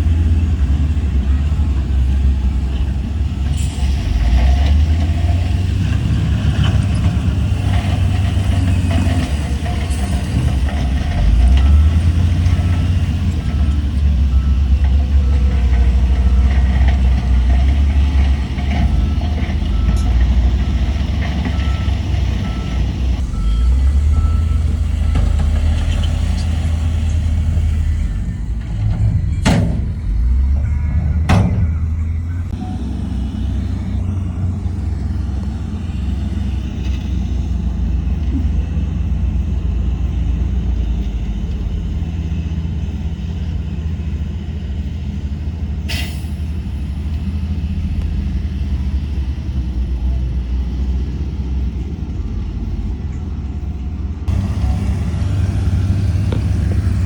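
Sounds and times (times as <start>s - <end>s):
diesel machinery droning: 0.0s - 57.0s
reversing alarm beeping: 11.4s - 16.5s, 19.0s - 28.4s, 29.0s - 34.5s, 54.3s - 57.0s
air brakes hissing: 45.9s - 46.6s.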